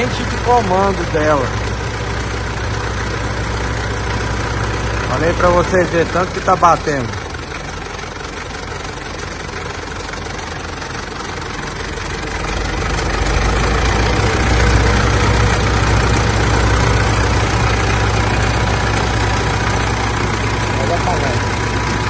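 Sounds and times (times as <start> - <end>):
diesel engine idling: 0.0 - 22.0.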